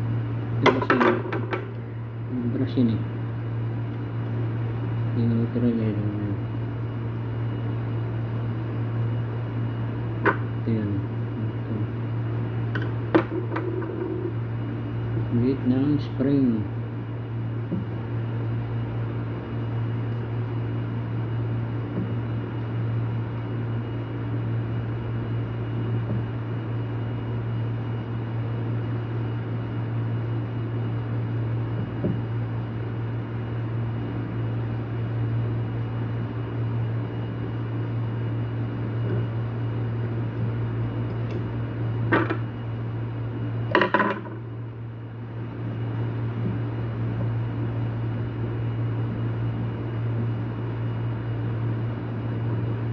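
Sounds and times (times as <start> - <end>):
low machine hum: 0.0 - 52.9.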